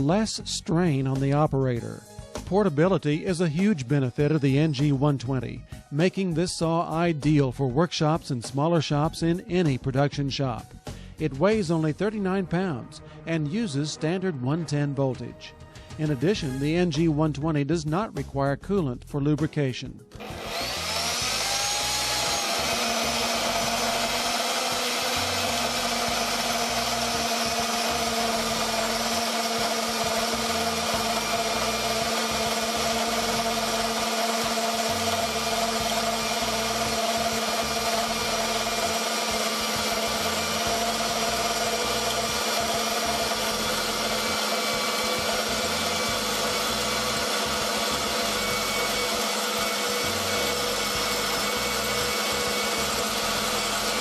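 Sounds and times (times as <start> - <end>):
bandsaw motor whining: 20.2 - 54.0.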